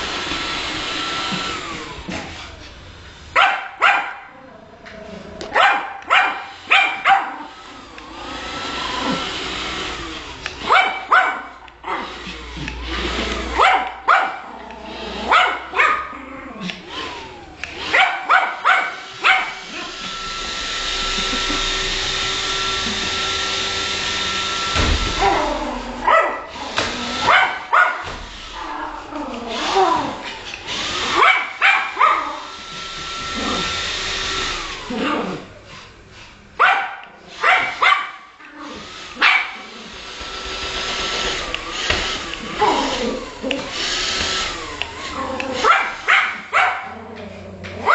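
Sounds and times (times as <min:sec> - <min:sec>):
robot vacuum whirring: 0:00.0 - 0:03.4, 0:04.8 - 0:15.8, 0:16.4 - 0:35.9, 0:38.4 - 0:47.9
dog barking: 0:03.4 - 0:04.4, 0:05.5 - 0:07.5, 0:10.6 - 0:12.0, 0:13.5 - 0:14.5, 0:15.3 - 0:16.1, 0:17.9 - 0:19.9, 0:26.0 - 0:26.5, 0:27.2 - 0:28.1, 0:31.1 - 0:32.4, 0:36.6 - 0:38.3, 0:39.2 - 0:39.7, 0:45.6 - 0:47.0
small dog yapping: 0:05.5 - 0:07.5, 0:13.5 - 0:14.5, 0:25.2 - 0:26.6, 0:36.6 - 0:38.2, 0:45.5 - 0:47.0.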